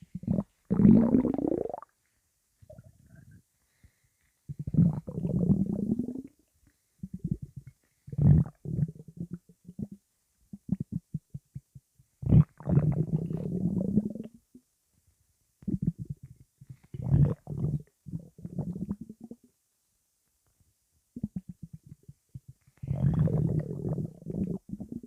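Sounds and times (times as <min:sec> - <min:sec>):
stomach gurgling: 0:00.0 - 0:01.9, 0:02.6 - 0:03.4, 0:04.5 - 0:06.4, 0:07.0 - 0:14.4, 0:15.6 - 0:19.5, 0:21.2 - 0:25.0
stomach short rapid pops: 0:07.0 - 0:14.1, 0:15.6 - 0:19.4, 0:21.2 - 0:25.0.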